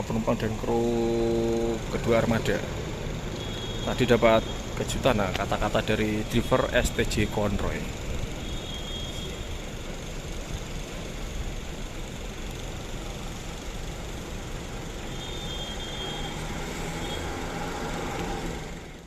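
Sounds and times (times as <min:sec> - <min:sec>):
bus engines rumbling: 0:00.0 - 0:19.0
road traffic: 0:00.0 - 0:19.0.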